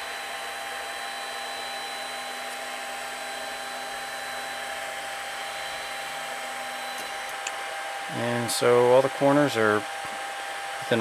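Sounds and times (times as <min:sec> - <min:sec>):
fan noise: 0:00.0 - 0:11.0
stepper motors whining: 0:00.0 - 0:11.0.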